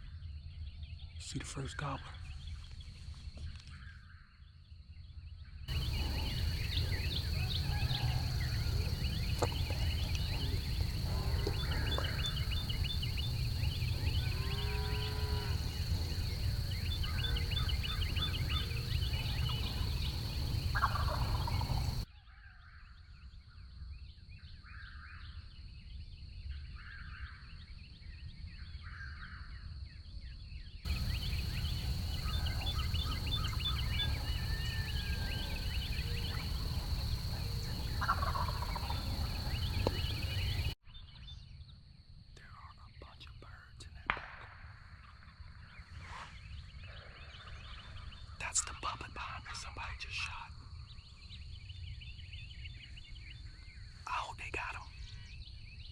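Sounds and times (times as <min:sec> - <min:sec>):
small birds chirping: 0:00.0 - 0:22.1, 0:30.4 - 0:41.7, 0:42.4 - 0:55.9
turkeys gobbling: 0:05.7 - 0:12.9, 0:17.0 - 0:22.0, 0:30.9 - 0:40.7
steady low rumble: 0:05.7 - 0:14.3, 0:15.6 - 0:22.0.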